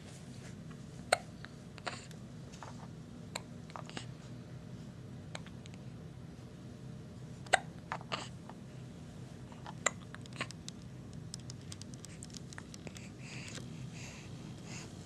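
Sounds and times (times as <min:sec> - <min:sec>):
small clicks: 0:10.2 - 0:13.6.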